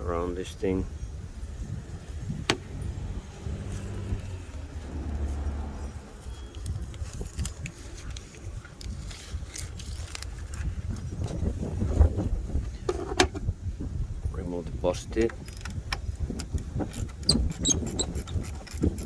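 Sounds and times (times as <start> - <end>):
low rumble: 1.4 - 7.4.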